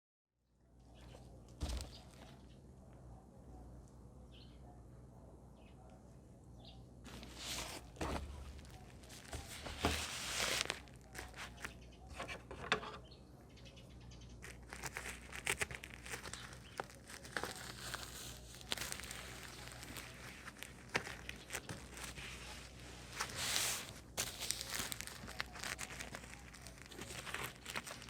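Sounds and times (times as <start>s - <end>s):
packaging crinkling and rustling: 1.0s - 2.4s, 7.1s - 11.8s, 14.4s - 28.0s.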